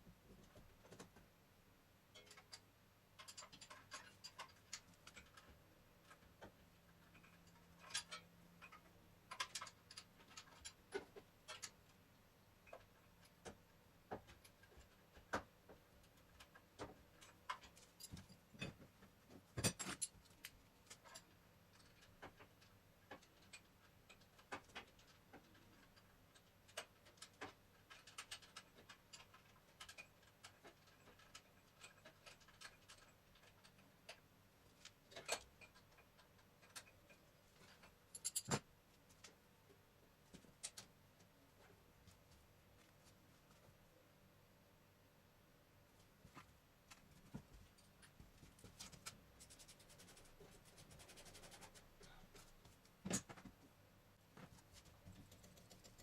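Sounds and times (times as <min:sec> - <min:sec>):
hand tools and metal parts clicking: 0:02.1 - 0:12.0, 0:19.6 - 0:34.2, 0:34.8 - 0:39.4.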